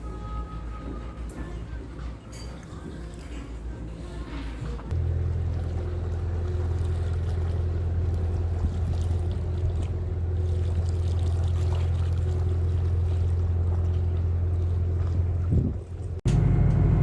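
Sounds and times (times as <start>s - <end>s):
engine humming: 3.6s - 17.0s.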